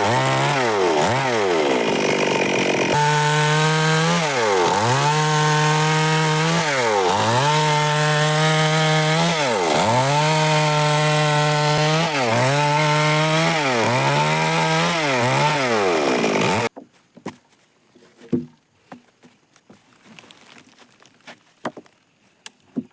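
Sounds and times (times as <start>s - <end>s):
chainsaw cutting wood: 0.0s - 16.7s.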